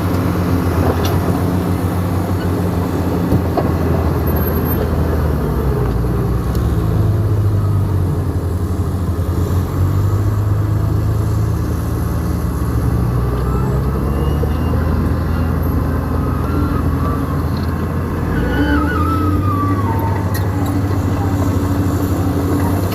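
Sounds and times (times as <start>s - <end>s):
bulldozer diesel engine running: 0.0s - 22.9s
faint wavering squeal: 13.3s - 22.9s.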